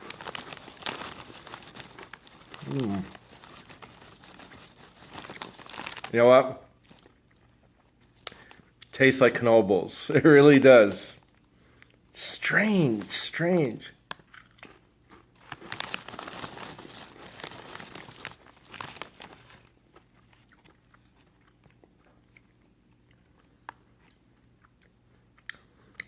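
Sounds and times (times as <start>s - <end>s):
person chewing crunchy chips: 0.0s - 8.7s, 14.2s - 26.0s.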